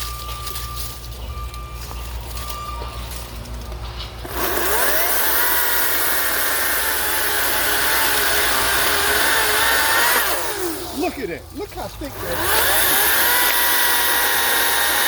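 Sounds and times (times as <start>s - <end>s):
chainsaw high whine: 4.2s - 11.3s, 12.0s - 15.0s.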